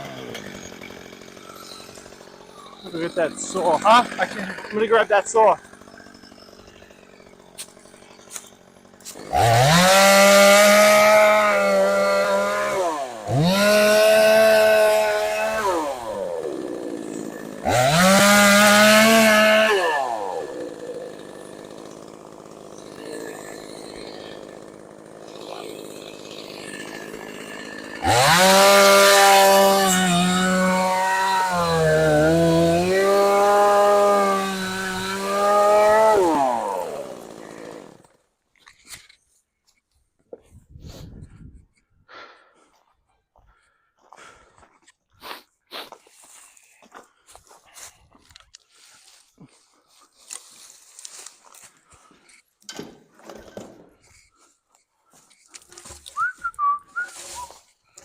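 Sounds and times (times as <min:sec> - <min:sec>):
chainsaw revving: 0:00.0 - 0:38.2
chainsaw idling: 0:00.0 - 0:38.3.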